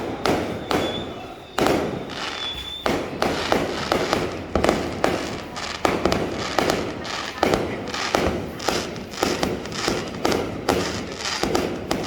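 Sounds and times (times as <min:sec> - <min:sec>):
fireworks bangs: 0:00.0 - 0:12.0
short high whistle: 0:00.1 - 0:03.0.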